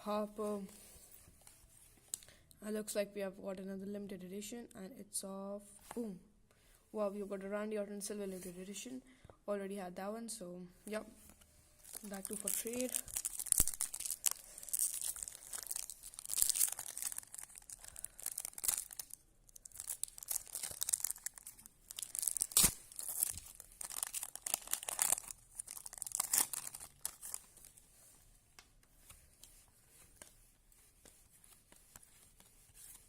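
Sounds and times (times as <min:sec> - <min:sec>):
cards rustling: 0:11.3 - 0:33.0
wrapper tearing and crinkling: 0:11.8 - 0:27.8.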